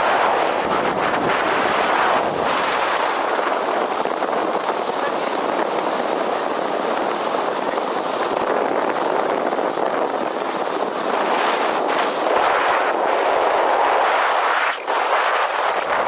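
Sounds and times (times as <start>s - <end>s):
wind blowing over microphone: 0.0s - 16.0s.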